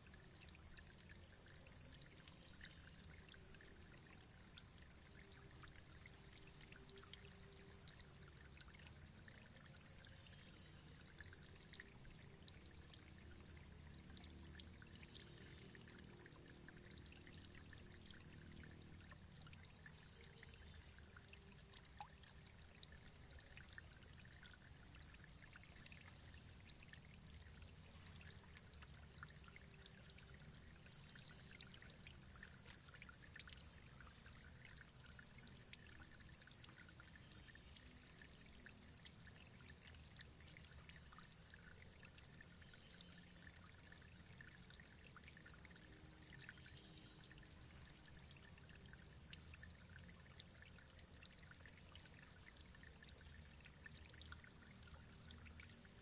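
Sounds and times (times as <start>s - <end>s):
water pouring and trickling: 0.0s - 56.0s.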